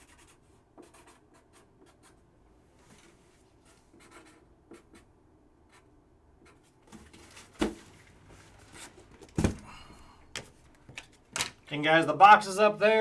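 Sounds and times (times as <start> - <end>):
card packs rustling: 10.4 - 11.7.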